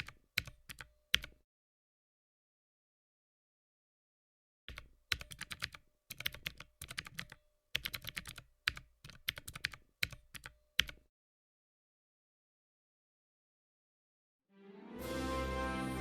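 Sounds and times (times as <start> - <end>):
keyboard typing clicks: 0.0 - 1.4, 4.7 - 11.0.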